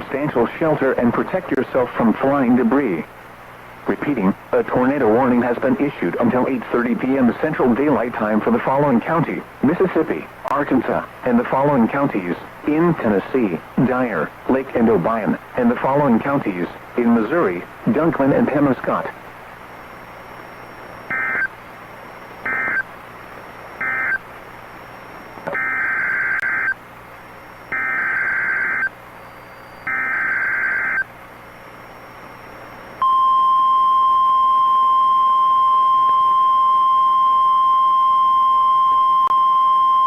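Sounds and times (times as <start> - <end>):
steady alarm tone: 21.0 - 21.5, 22.4 - 22.9, 23.8 - 24.2, 25.4 - 26.8, 27.6 - 31.1
warbling digital data bursts: 21.0 - 21.5, 23.8 - 24.2.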